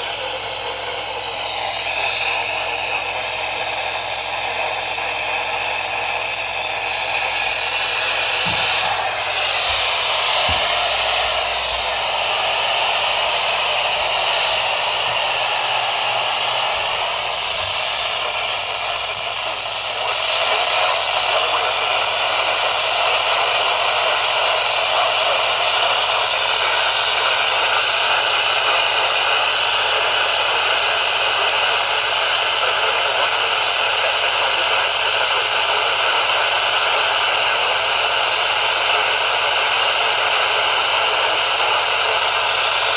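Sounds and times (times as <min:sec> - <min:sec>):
radio static hiss: 0:00.0 - 0:42.9.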